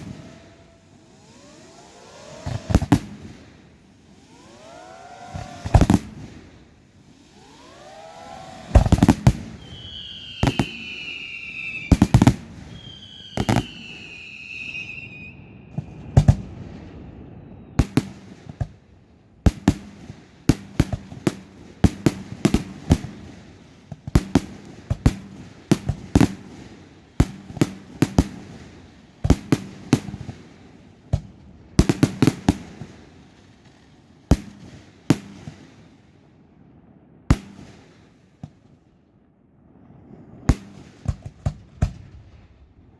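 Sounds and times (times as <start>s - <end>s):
falling firework whistle: 0.0s - 18.9s
fireworks bangs: 0.0s - 42.9s.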